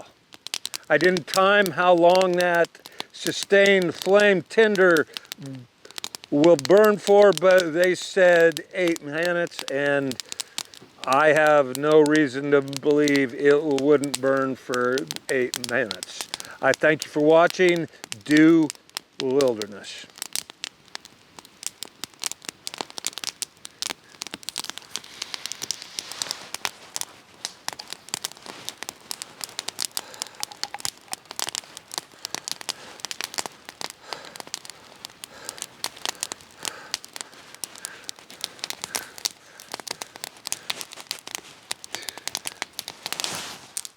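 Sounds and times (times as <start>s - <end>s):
campfire crackling and popping: 0.0s - 43.9s.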